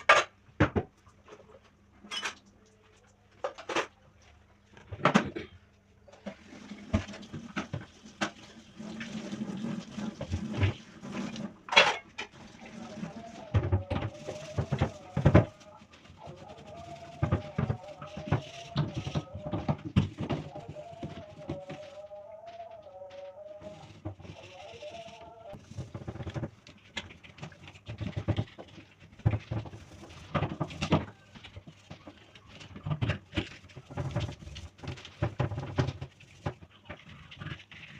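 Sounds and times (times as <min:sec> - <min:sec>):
dishes clattering in sink: 0:11.6 - 0:12.4.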